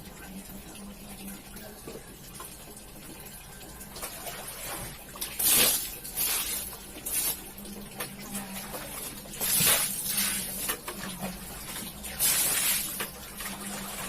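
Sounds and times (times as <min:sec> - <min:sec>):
water splashing while washing carpet: 0:03.9 - 0:14.0.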